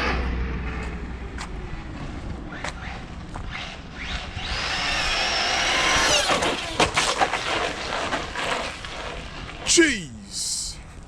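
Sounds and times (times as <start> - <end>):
electric motor whine: 4.0 - 6.8.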